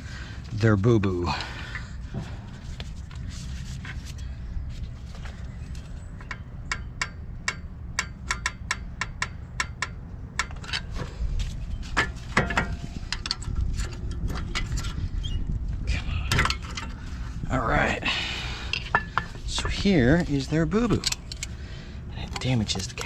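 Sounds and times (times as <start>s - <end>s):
steady low rumble: 0.0s - 23.0s
metallic tool clicks and taps: 6.3s - 10.6s.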